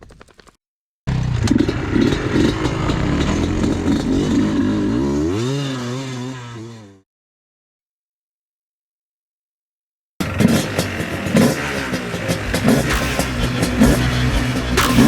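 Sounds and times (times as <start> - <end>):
two-stroke engine running unevenly: 10.2 - 15.0.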